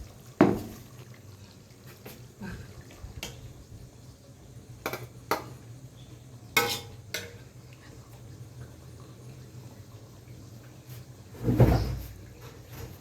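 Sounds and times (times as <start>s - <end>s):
kitchenware clinking: 6.6s - 7.5s.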